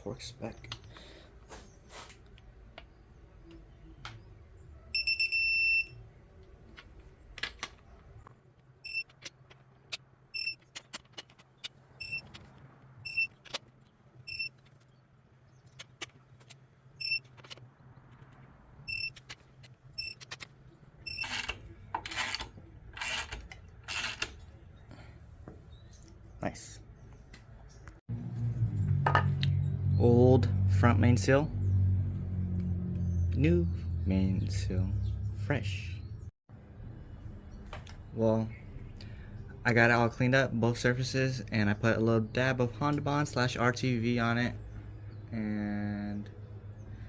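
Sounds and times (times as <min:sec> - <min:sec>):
torque wrench beeping: 0:08.8 - 0:09.2, 0:10.3 - 0:10.7, 0:12.0 - 0:12.3, 0:13.0 - 0:13.5, 0:14.3 - 0:14.6, 0:17.0 - 0:17.3, 0:18.9 - 0:19.3, 0:20.0 - 0:20.4, 0:21.0 - 0:22.4.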